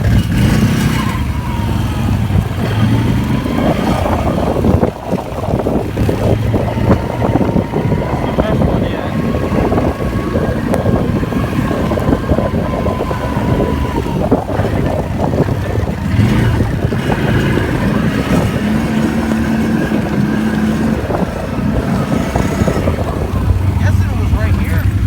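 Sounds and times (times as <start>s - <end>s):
atv engine running: 0.0s - 25.0s.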